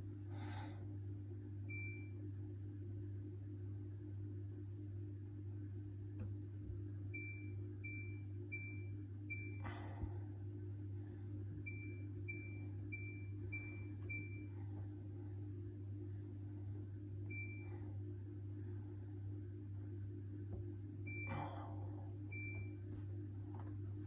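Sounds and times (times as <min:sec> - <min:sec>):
steady low hum: 0:00.0 - 0:24.0
washing machine panel beeping: 0:07.1 - 0:09.7, 0:11.6 - 0:14.6, 0:17.3 - 0:17.8, 0:21.0 - 0:22.9.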